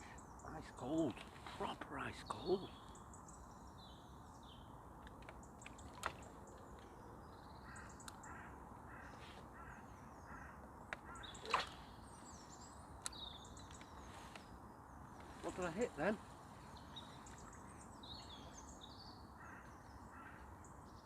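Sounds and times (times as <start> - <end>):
bird calls: 0.0 - 21.0
waterside ambience: 0.0 - 21.0
light clicks: 13.0 - 14.5.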